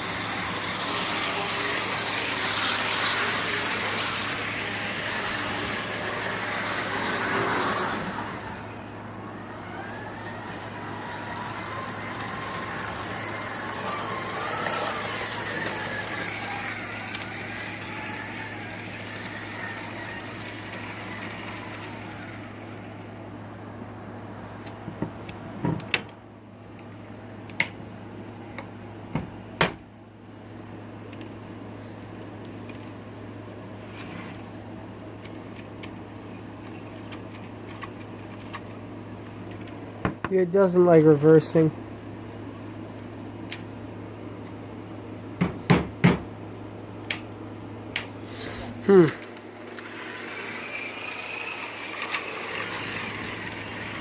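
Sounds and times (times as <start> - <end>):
small electric motor whining: 0.0 - 23.6, 33.7 - 34.6, 48.0 - 54.0
steady low hum: 0.0 - 54.0
light clicks of model train: 47.9 - 48.1.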